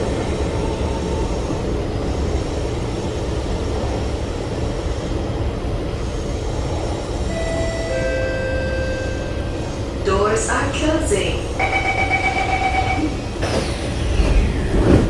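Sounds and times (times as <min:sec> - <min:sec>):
metro train carriage rumble and hum: 0:00.0 - 0:15.0.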